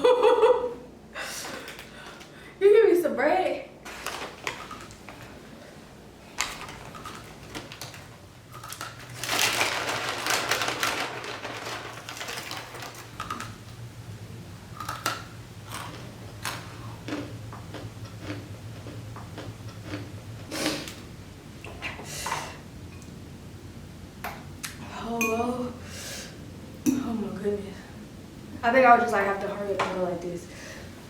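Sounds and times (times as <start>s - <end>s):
wet chewing mouth clicks: 14.8s - 21.0s.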